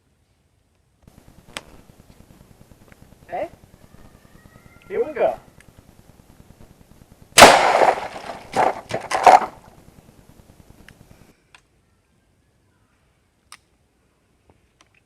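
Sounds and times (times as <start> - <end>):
pistol shots: 7.4 - 9.6.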